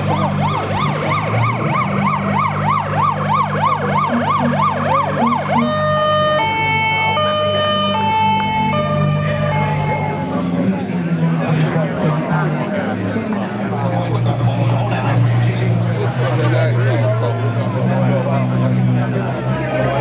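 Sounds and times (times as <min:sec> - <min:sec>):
vehicle siren wailing: 0:00.0 - 0:10.8.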